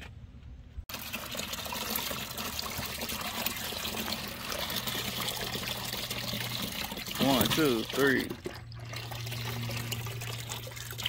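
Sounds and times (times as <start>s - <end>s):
water trickling and splashing: 0.9s - 11.0s
low steady hum: 3.6s - 11.0s.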